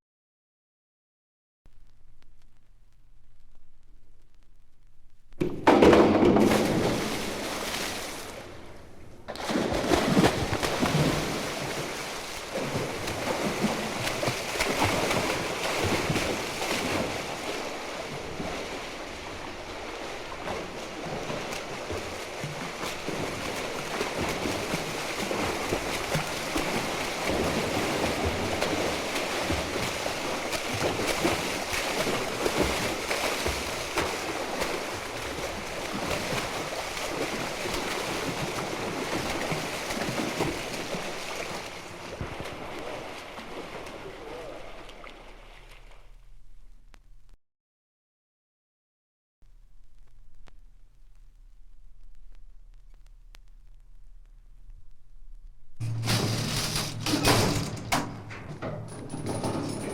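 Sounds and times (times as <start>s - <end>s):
rushing water: 5.7s - 46.0s.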